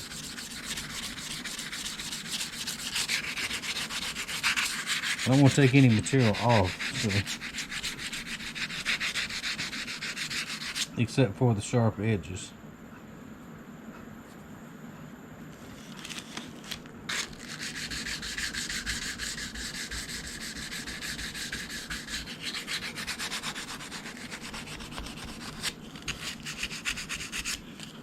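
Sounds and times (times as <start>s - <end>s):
sandpaper rubbing on metal: 0.0s - 10.9s, 17.1s - 27.6s.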